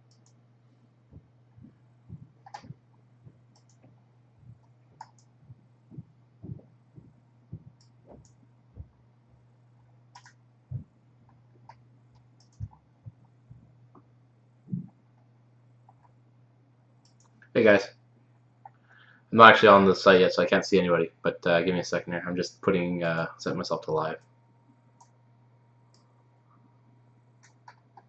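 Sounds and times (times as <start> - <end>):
low electrical hum: 0.0 - 28.0
mouse and keyboard clicking: 2.4 - 2.7, 3.5 - 3.9, 4.6 - 5.3, 10.1 - 10.4, 11.6 - 12.8, 27.4 - 28.0.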